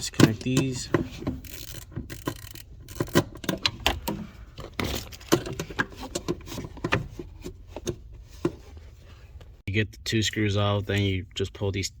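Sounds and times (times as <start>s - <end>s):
tools clicking and knocking: 0.0s - 7.2s.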